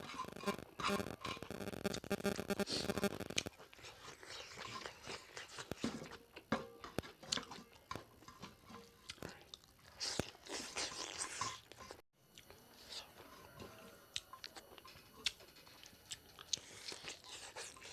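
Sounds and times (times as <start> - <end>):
wet chewing: 3.0 - 13.0, 14.1 - 17.9.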